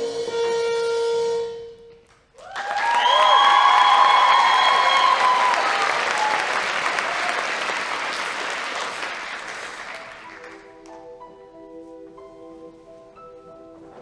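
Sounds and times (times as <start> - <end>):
audience applauding: 2.4 - 11.0.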